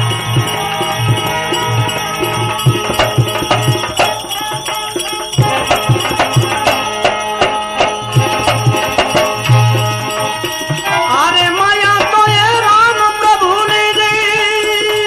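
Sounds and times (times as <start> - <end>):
hand drum beating: 0.0 - 15.0
jingling percussion: 0.0 - 15.0
steady held notes: 0.0 - 15.0.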